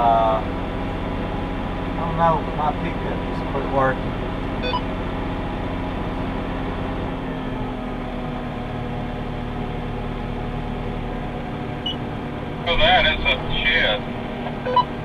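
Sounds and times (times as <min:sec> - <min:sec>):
tractor engine running: 0:08.6 - 0:15.0.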